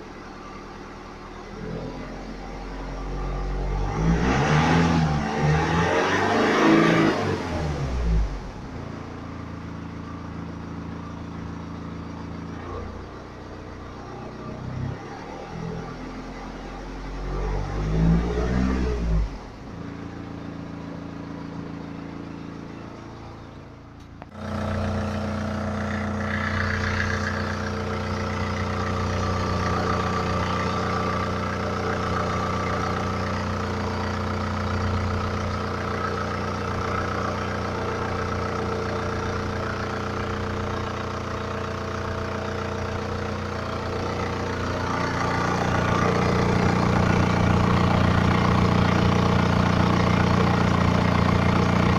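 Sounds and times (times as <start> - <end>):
diesel engine idling: 20.3 - 51.9.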